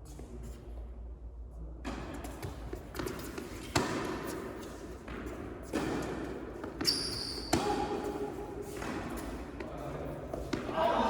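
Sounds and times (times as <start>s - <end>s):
shoe squeak: 6.8s - 7.8s.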